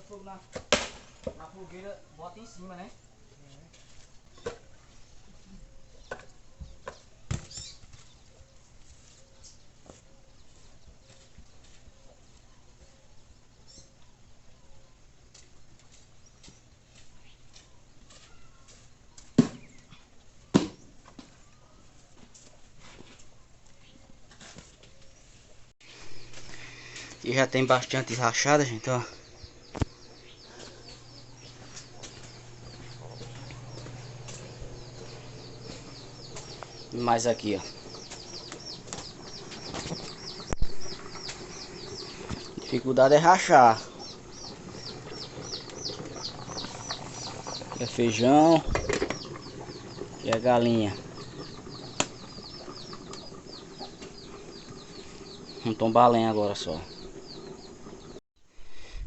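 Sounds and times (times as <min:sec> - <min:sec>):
firewood knocking and thumping: 0:00.5 - 0:01.5, 0:48.6 - 0:49.4, 0:52.0 - 0:52.5
chickens clucking and cheeping: 0:28.2 - 0:59.0.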